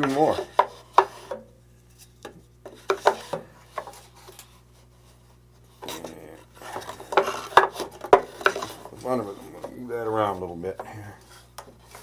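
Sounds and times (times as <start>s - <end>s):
wooden pieces knocking: 2.2s - 4.0s, 5.8s - 10.9s
wood sliding rub: 2.7s - 12.0s.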